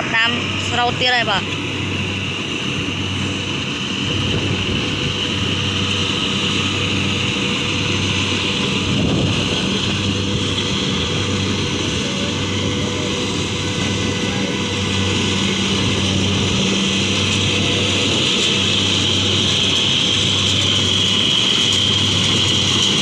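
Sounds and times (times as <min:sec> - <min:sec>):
combine harvester engine drone: 0:00.0 - 0:23.0
mechanical rushing noise: 0:00.0 - 0:23.0.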